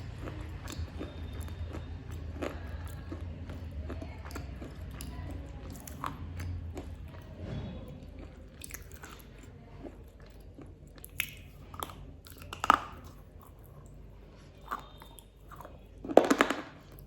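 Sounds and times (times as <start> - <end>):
chewing and crunching wafer: 0.0 - 17.0.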